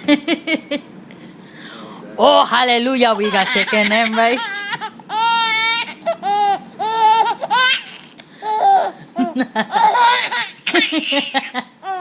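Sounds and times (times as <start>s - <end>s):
baby laughing and squealing: 3.2s - 12.0s.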